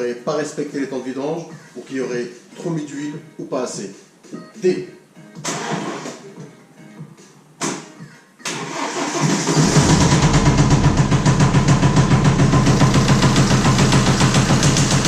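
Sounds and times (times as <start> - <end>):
diesel engine cranking: 8.5 - 15.0
diesel engine knocking: 9.6 - 15.0.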